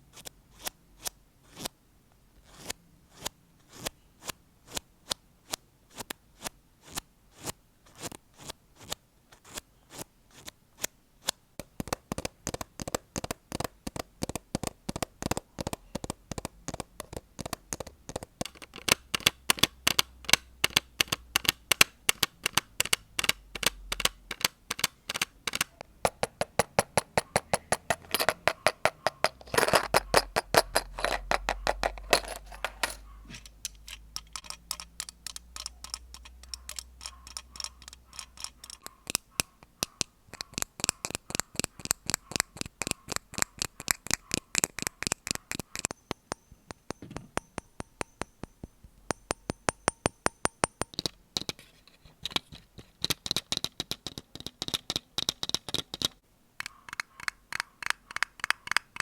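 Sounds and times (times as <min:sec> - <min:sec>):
light ringing: 0:45.9 - 0:51.2.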